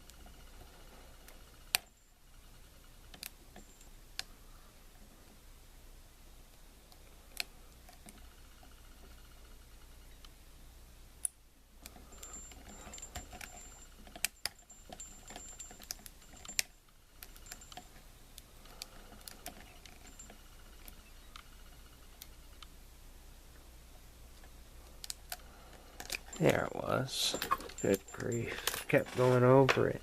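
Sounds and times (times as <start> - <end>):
lock pick scraping in padlock: 27.2 - 30.0.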